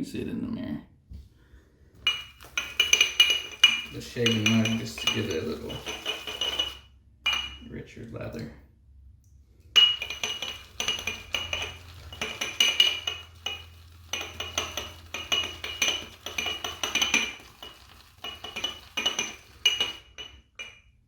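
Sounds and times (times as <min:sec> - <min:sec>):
shaving brush scraping in a mug: 0:02.1 - 0:07.5, 0:09.8 - 0:20.4.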